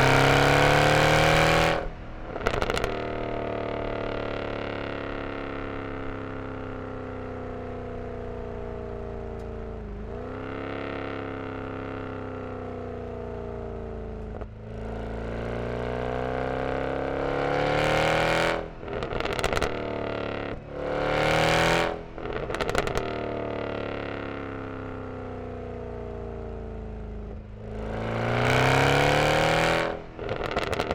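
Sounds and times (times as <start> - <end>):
engine accelerating: 0.0 - 6.6
exhaust crackles: 0.0 - 11.7, 22.1 - 24.7, 29.7 - 30.9
car exhaust drone: 0.0 - 30.9.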